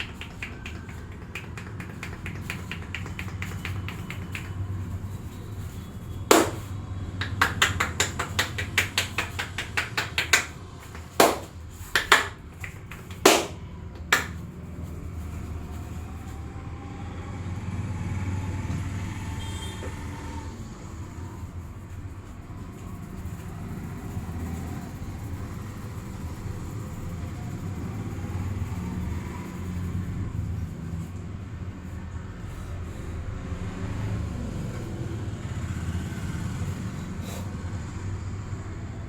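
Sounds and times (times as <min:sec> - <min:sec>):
hand slaps and taps: 0:00.0 - 0:14.5.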